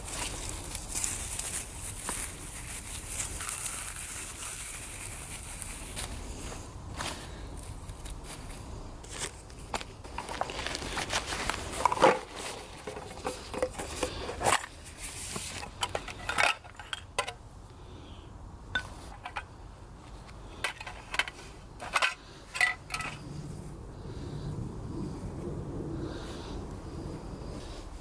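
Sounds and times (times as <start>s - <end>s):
rustling handling noise: 0.0s - 17.4s, 18.7s - 23.3s.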